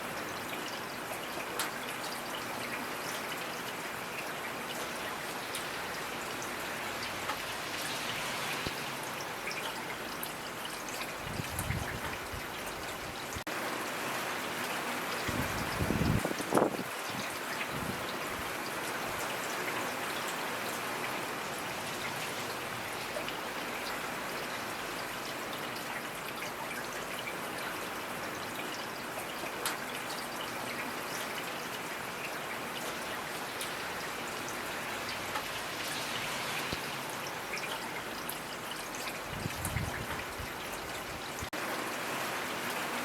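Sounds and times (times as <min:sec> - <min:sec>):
steady rainfall hiss: 0:00.0 - 0:43.0
raindrops pattering: 0:29.0 - 0:43.0.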